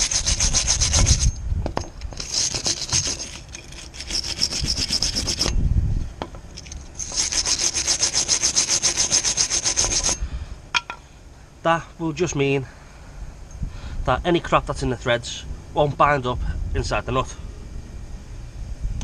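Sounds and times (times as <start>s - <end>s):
wire brush scrubbing bolt threads: 0.0s - 5.6s, 6.5s - 10.2s.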